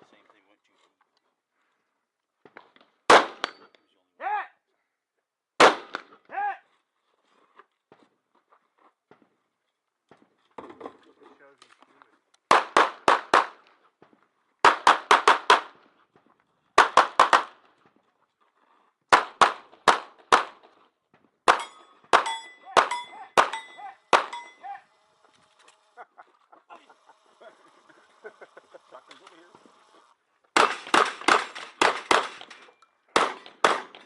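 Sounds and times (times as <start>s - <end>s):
gunshots: 3.1s - 3.6s, 5.6s - 6.2s, 12.5s - 13.6s, 14.6s - 15.8s, 16.8s - 17.6s, 19.1s - 20.6s, 21.4s - 24.6s, 30.5s - 34.0s
steel targets pinging: 21.5s - 24.9s.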